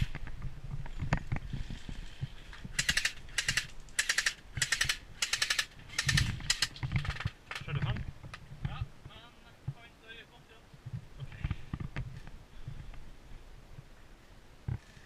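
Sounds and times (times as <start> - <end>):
airsoft gun full-auto bursts: 2.7 - 7.3.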